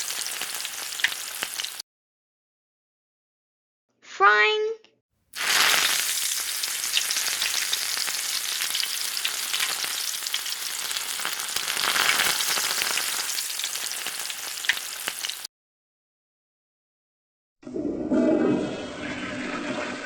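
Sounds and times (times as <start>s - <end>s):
food sizzling in hot oil: 0.0s - 1.8s, 5.4s - 15.5s.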